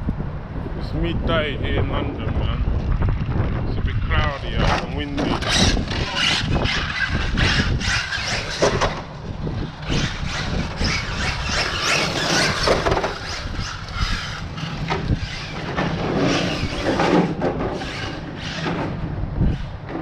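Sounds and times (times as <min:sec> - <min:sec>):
wind rumble on microphone: 0:00.0 - 0:20.0
tyres squealing: 0:04.4 - 0:09.1, 0:09.7 - 0:20.0
electric motor whining: 0:04.4 - 0:19.9.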